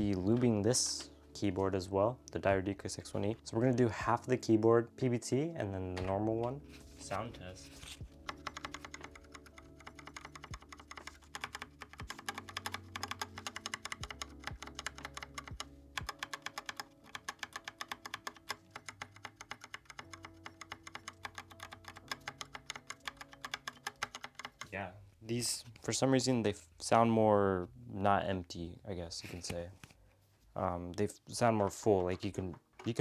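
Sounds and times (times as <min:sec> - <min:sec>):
mechanical keyboard typing: 0:08.0 - 0:24.7.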